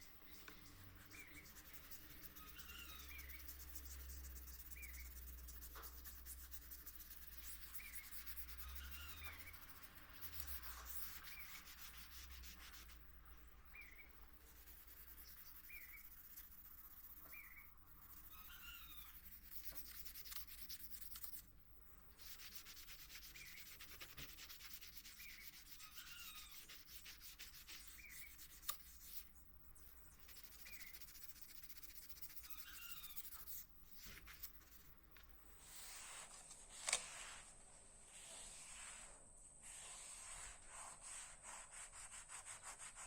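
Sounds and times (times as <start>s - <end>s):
sandpaper rubbing on steel blade: 1.0s - 13.0s, 14.4s - 21.4s, 22.2s - 29.3s, 30.2s - 34.8s.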